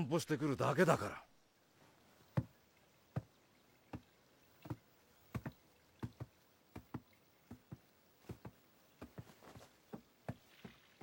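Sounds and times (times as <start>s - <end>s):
footsteps walking: 3.9s - 11.0s.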